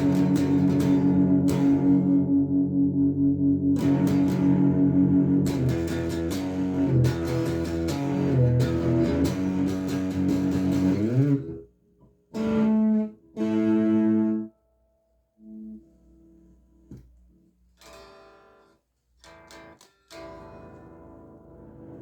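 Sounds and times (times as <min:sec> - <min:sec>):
fuzz electric guitar solo: 0:00.0 - 0:11.6, 0:12.4 - 0:14.5.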